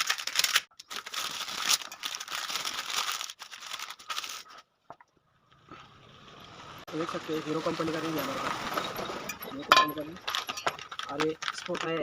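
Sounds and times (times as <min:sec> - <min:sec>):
wrapping crinkling and tearing: 0:00.0 - 0:04.7, 0:10.1 - 0:12.0.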